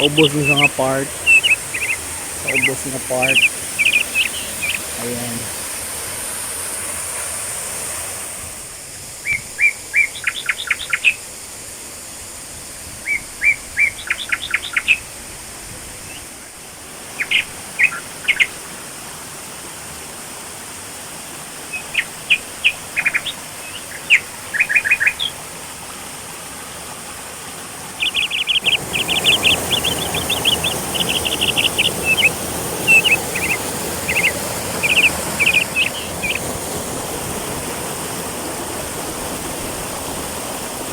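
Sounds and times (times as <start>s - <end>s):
bird chirping: 0.0s - 5.5s, 9.2s - 11.2s, 13.1s - 15.0s, 17.2s - 18.6s, 21.7s - 25.4s, 28.0s - 36.6s
rushing falling water: 0.0s - 40.9s.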